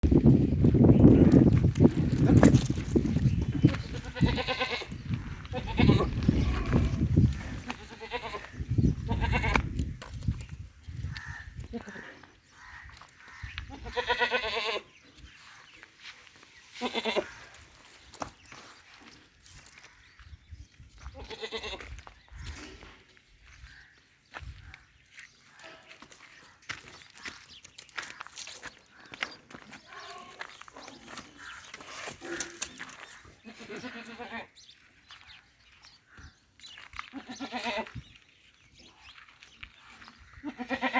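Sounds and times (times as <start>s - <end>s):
goats bleating: 3.9s - 9.6s, 13.7s - 14.8s, 16.8s - 17.4s, 21.2s - 21.9s, 33.4s - 34.5s, 37.1s - 37.9s, 40.4s - 40.9s.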